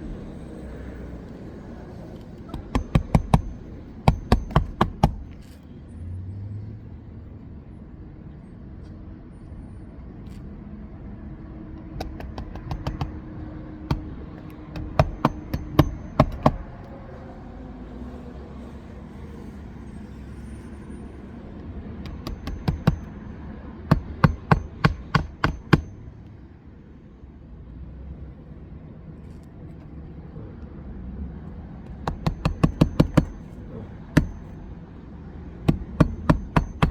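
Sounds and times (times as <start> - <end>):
hammer striking roof shingles: 2.5 - 5.5, 11.8 - 16.8, 22.0 - 23.3, 23.9 - 25.9, 31.9 - 33.6, 34.2 - 34.6, 35.7 - 36.9.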